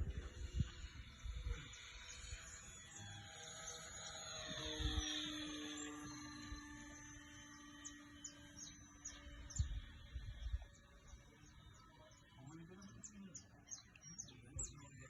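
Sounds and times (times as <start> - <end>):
wind buffeting microphone: 0.0 - 2.7, 9.3 - 11.2
small birds chirping: 0.4 - 15.0.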